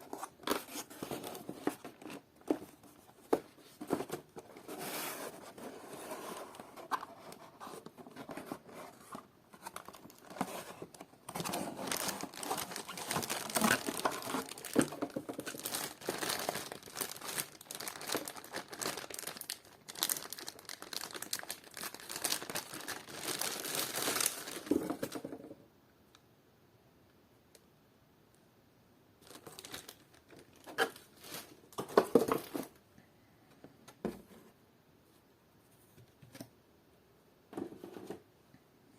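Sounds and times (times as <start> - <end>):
packaging crinkling and tearing: 9.1 - 25.2, 29.2 - 32.6.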